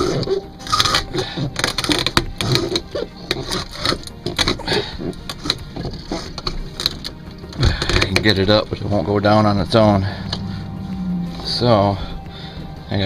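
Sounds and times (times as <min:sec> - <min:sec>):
hand crank winch clicking: 0:00.0 - 0:07.2.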